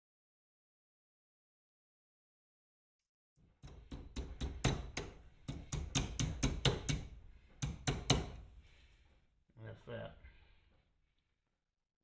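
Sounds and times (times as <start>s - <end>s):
metal tool tapping on pin: 3.6s - 8.4s.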